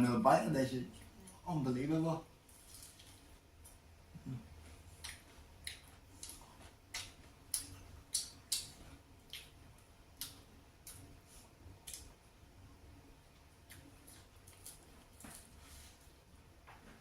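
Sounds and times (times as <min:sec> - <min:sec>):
chewing crispy chicken: 0:02.5 - 0:12.2, 0:13.3 - 0:16.0
mouth clicks and smacks: 0:05.0 - 0:09.6.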